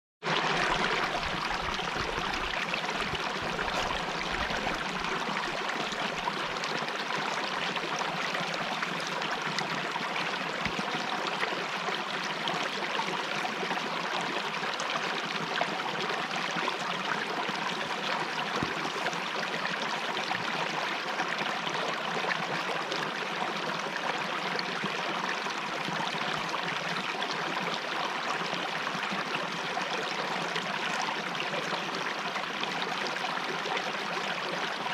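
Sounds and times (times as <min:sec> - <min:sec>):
stream water over rocks: 0:00.2 - 0:34.9.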